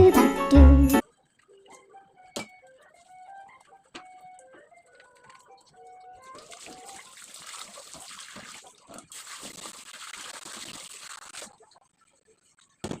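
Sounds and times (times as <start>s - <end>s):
running water splashing: 5.1s - 12.8s.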